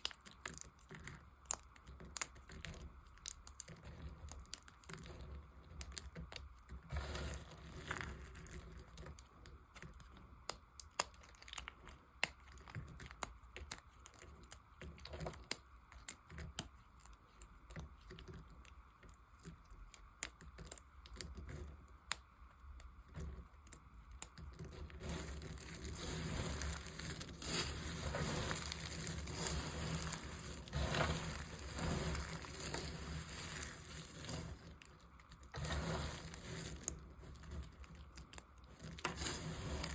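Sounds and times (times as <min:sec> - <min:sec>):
knife carving dry soap: 0:00.0 - 0:39.9.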